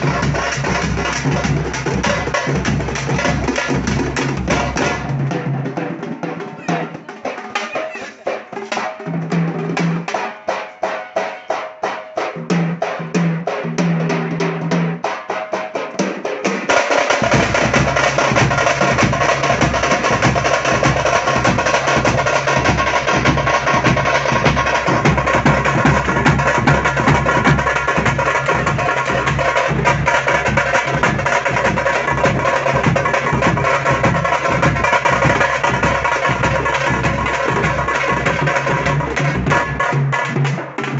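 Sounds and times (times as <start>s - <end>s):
loud drum ensemble with heavy bass: 0.0s - 40.9s
fast frame drumming: 16.6s - 40.9s.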